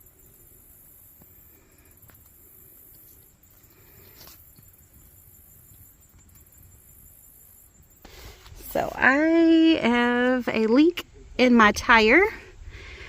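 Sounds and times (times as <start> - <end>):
insects trilling: 0.0 - 9.9.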